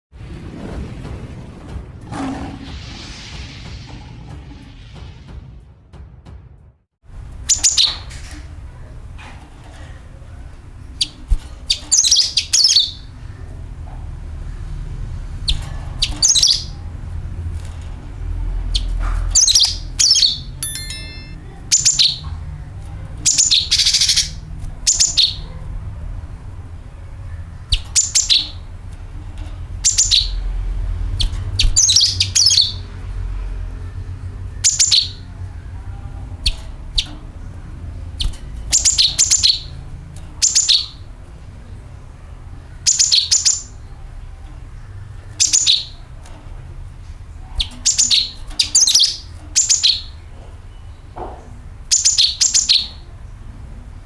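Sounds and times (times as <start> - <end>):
steady low rumble: 0.2 - 9.2
bird chirping: 18.7 - 22.3, 51.9 - 53.1.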